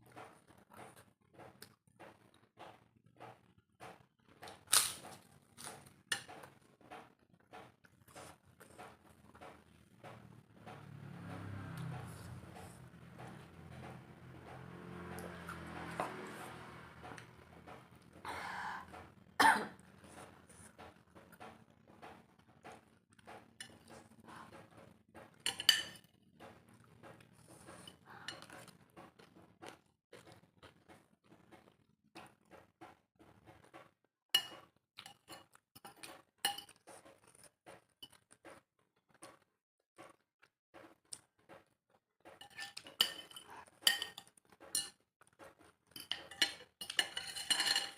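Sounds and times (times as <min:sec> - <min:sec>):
breathy rasp: 0:18.2 - 0:19.0
person coughing: 0:19.4 - 0:19.8
cutlery clinking on bowl: 0:25.2 - 0:26.1, 0:34.4 - 0:37.4, 0:42.3 - 0:45.0, 0:45.9 - 0:47.9.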